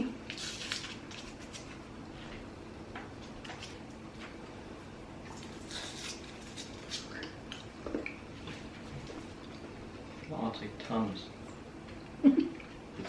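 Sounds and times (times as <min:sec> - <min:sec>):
snack packaging rustling: 0:00.3 - 0:01.9.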